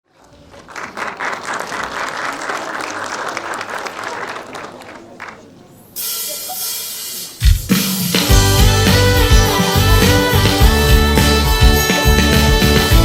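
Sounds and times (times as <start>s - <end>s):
audience applauding: 0.1s - 5.6s
steady hiss: 5.9s - 8.3s.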